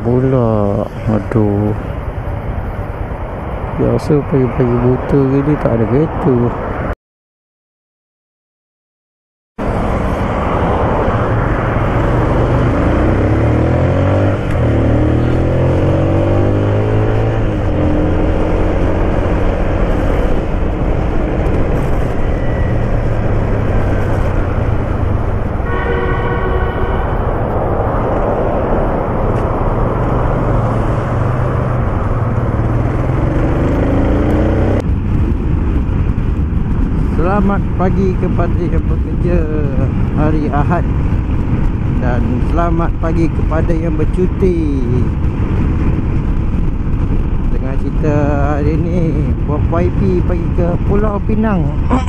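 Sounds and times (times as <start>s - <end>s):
road traffic engines: 0.0s - 6.9s, 9.6s - 52.0s
vehicle horn: 25.6s - 27.7s.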